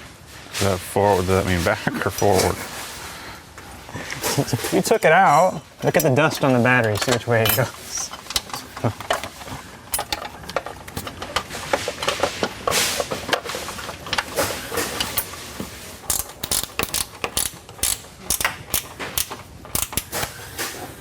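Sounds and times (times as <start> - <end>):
socket ratchet clicking: 9.9 - 10.3, 10.9 - 11.1, 16.1 - 20.4.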